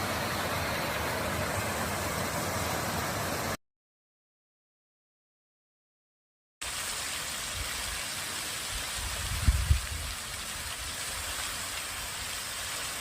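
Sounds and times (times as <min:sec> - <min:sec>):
water splashing in a water feature: 0:00.0 - 0:03.6, 0:06.6 - 0:13.0.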